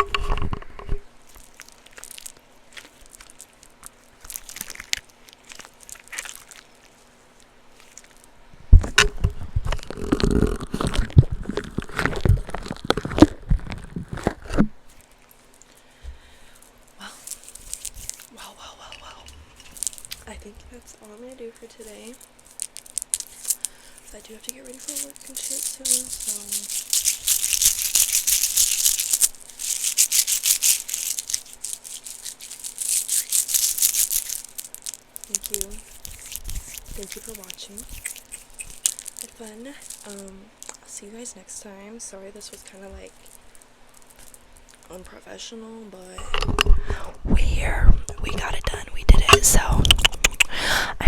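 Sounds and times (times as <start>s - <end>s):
fidget cube squishing: 1.3s - 7.1s, 7.7s - 15.7s, 16.6s - 18.4s, 19.0s - 20.4s, 21.6s - 40.8s.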